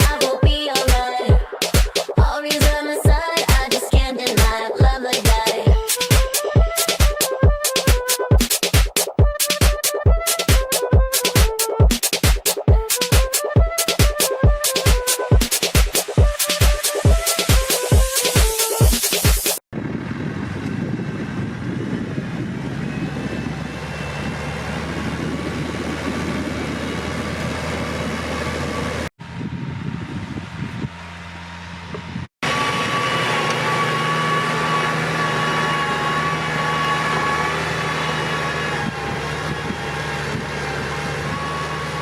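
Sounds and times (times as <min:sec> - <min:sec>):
tractor engine running: 0:00.0 - 0:18.8, 0:19.8 - 0:42.0.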